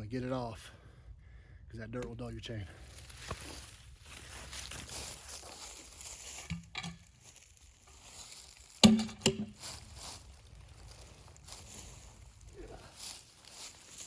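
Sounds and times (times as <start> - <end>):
sharp knocks: 8.8 - 9.6.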